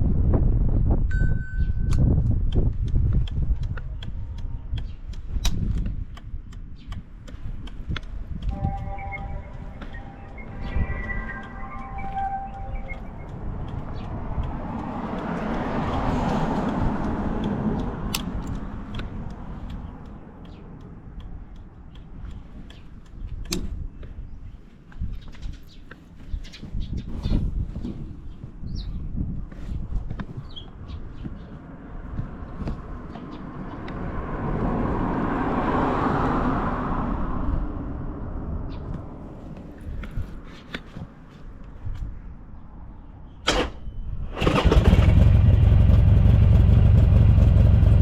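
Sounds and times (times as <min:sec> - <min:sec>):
loud rushing noise: 0:08.6 - 0:13.2
light ticks: 0:12.2 - 0:23.6
engine running: 0:44.3 - 0:48.0.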